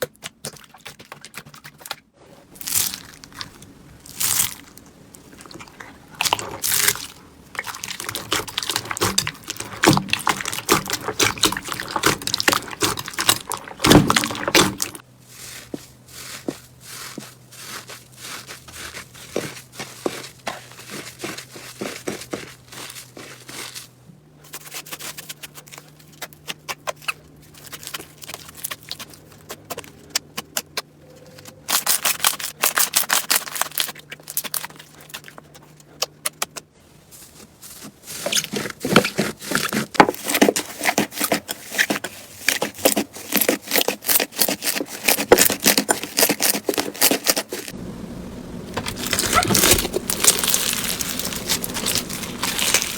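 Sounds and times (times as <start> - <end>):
slime crackling and popping: 2.6 - 15.0, 31.4 - 35.4, 48.8 - 52.9.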